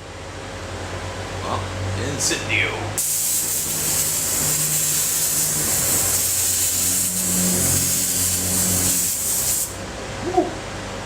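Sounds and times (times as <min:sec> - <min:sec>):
gas flame jet hissing: 0:03.0 - 0:09.8.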